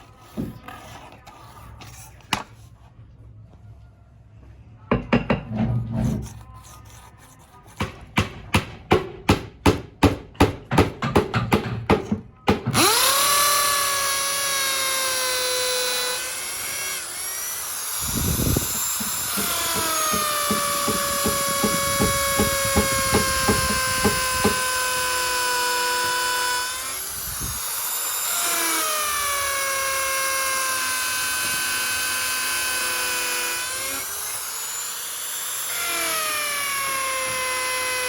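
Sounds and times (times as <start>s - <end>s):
hand tool scraping: 0.0s - 2.8s, 5.6s - 8.3s, 17.7s - 29.7s
even tool strokes: 5.9s - 8.0s
power tool motor whine: 12.7s - 38.0s.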